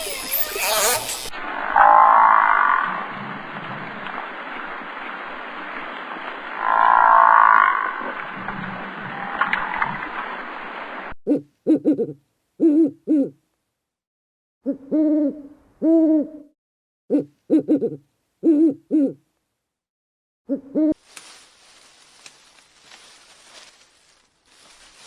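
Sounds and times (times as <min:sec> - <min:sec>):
animal calls: 0:00.0 - 0:03.2, 0:06.6 - 0:08.2.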